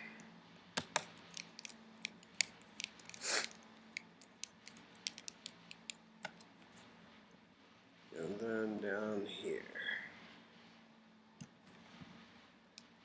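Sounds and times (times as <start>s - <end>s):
plastic clicks and crackles: 0.8s - 6.5s.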